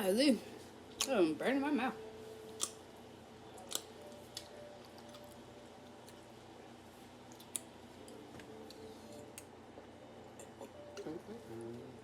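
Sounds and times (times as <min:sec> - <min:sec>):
chewing pickle: 0:03.6 - 0:05.4.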